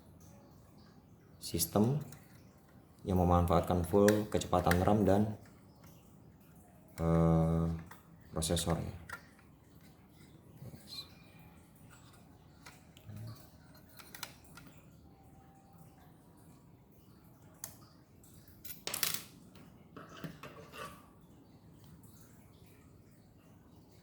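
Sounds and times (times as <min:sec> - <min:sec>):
small clicks and taps of laptop parts: 0:07.7 - 0:10.3, 0:12.0 - 0:14.8.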